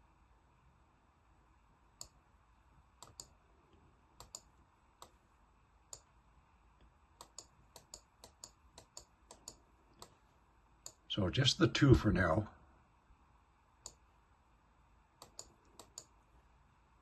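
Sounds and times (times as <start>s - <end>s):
computer mouse clicking: 3.0s - 3.4s, 4.2s - 5.2s, 5.9s - 6.1s, 6.8s - 10.2s, 13.8s - 14.0s, 15.2s - 16.2s.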